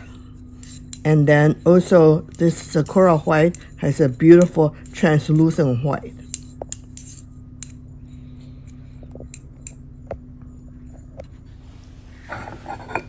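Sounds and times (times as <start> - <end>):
painting tools clinking on dish: 0.0 - 10.1
steady low hum: 0.0 - 13.0.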